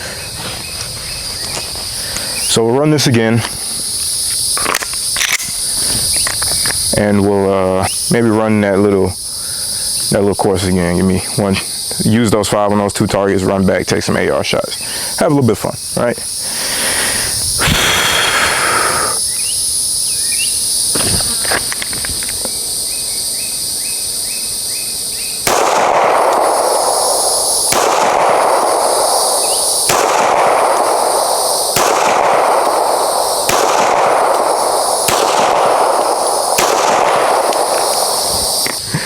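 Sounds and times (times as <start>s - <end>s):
high insect buzz: 0.0s - 12.2s, 14.5s - 39.0s
gunshots with ringing echo: 25.4s - 38.7s.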